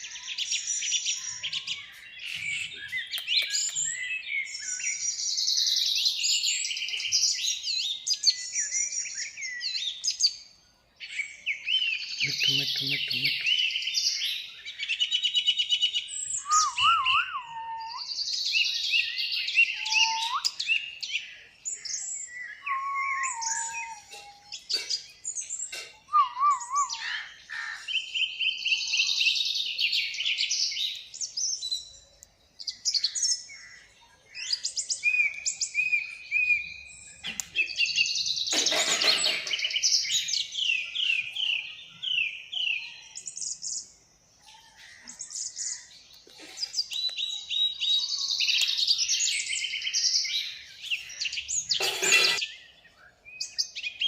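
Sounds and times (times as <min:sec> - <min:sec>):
birds chirping and whistling: 0:00.0 - 0:54.0
loud harsh bird call: 0:15.1 - 0:30.9, 0:33.0 - 0:43.3, 0:44.4 - 0:52.7.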